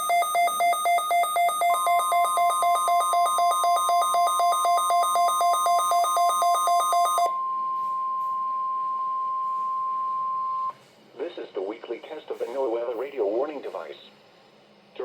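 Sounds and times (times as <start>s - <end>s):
alarm beeping rapidly: 0.0s - 7.3s
steady alarm tone: 0.0s - 10.7s.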